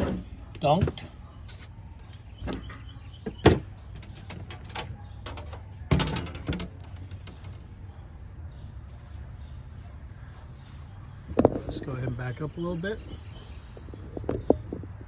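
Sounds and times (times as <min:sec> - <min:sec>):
cooking gear knocking and clattering: 0:04.0 - 0:07.6.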